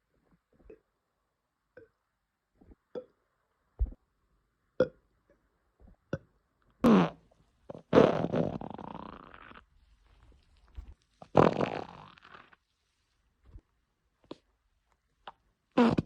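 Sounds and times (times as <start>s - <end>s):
farts: 6.8s - 9.6s, 10.8s - 12.6s, 15.8s - 16.0s.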